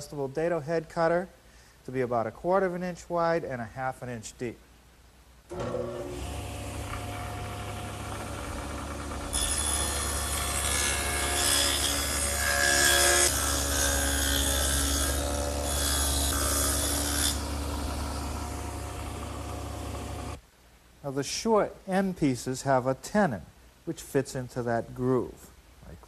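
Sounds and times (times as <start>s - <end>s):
saw cutting wood: 5.5s - 20.4s
table saw running: 5.5s - 20.4s.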